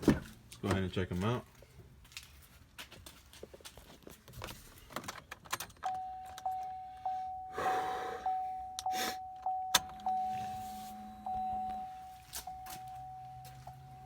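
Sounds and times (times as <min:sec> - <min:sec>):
car door warning chime: 0:05.8 - 0:14.0.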